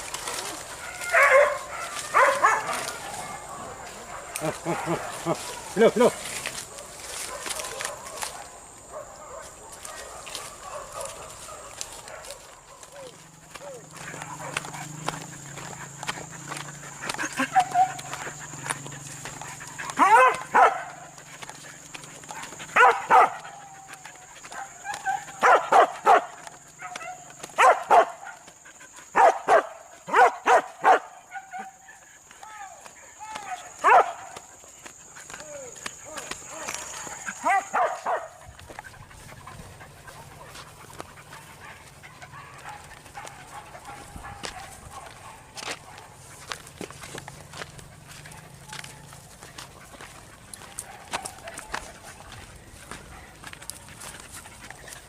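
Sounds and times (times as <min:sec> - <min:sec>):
dogs barking: 0:00.0 - 0:55.0
dog yelping: 0:00.3 - 0:05.8, 0:14.0 - 0:18.6, 0:19.6 - 0:21.1, 0:22.4 - 0:28.2, 0:36.8 - 0:38.4.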